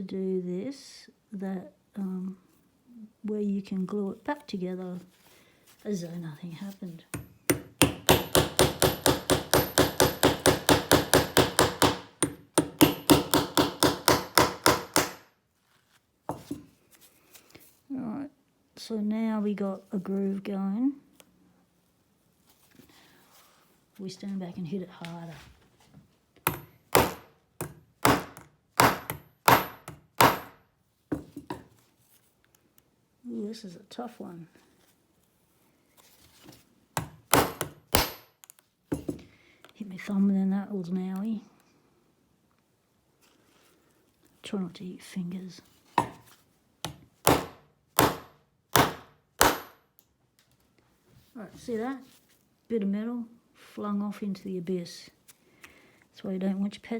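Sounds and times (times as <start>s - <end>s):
hammer tapping cutting tool: 7.1s - 15.2s, 26.5s - 30.5s.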